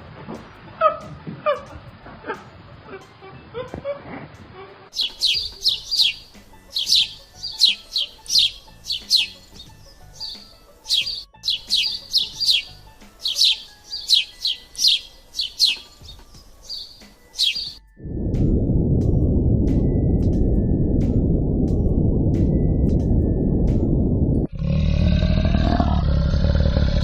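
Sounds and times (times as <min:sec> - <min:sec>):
birds chirping: 0:04.9 - 0:17.8
loud low rushing noise: 0:18.0 - 0:24.5.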